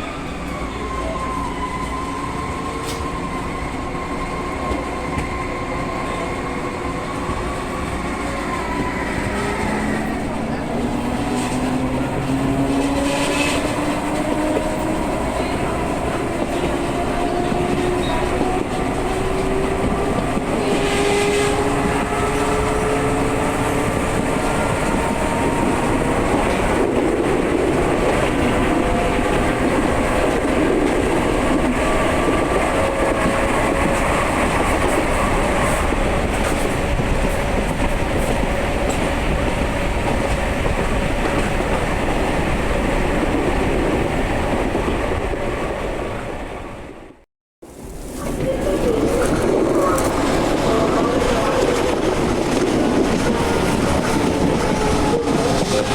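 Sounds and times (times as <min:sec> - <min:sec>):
wheel and rail noise: 0:47.6 - 0:55.9.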